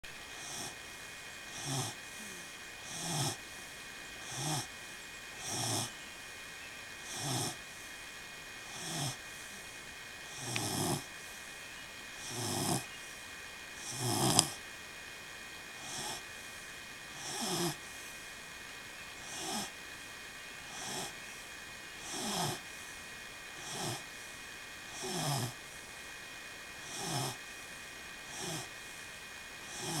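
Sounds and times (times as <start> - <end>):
faint steady hum: 0.0 - 30.0
person snoring: 0.3 - 0.8, 1.5 - 3.4, 4.2 - 4.7, 5.3 - 5.9, 7.0 - 7.6, 8.6 - 9.7, 10.3 - 11.1, 12.2 - 12.9, 13.8 - 14.6, 15.8 - 16.2, 17.1 - 17.9, 19.2 - 19.7, 20.6 - 21.2, 22.0 - 22.6, 23.6 - 24.1, 24.9 - 25.6, 26.8 - 27.4, 28.3 - 28.7, 29.6 - 30.0.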